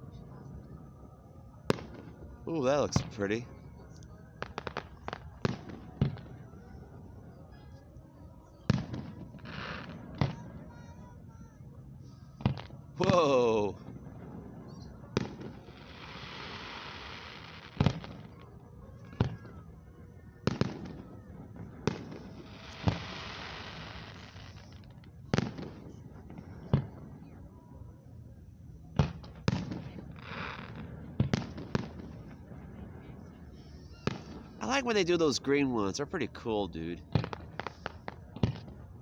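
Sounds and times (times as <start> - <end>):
fireworks bursting with booms: 0.0 - 7.0, 8.4 - 27.8, 28.9 - 39.0
fireworks crackling hiss: 9.3 - 10.6, 14.7 - 18.6, 21.8 - 27.0, 29.2 - 39.0.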